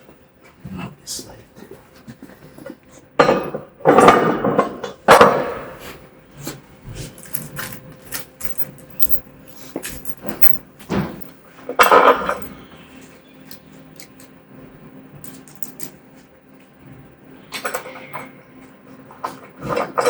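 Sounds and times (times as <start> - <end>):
steel parts clanking and scraping: 7.2 - 12.5, 15.2 - 15.9.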